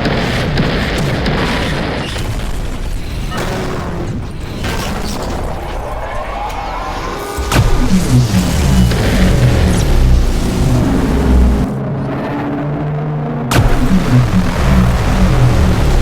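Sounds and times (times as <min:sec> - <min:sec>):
music: 0:06.4 - 0:16.0
booming explosion-like effects: 0:06.9 - 0:11.8, 0:13.5 - 0:16.0.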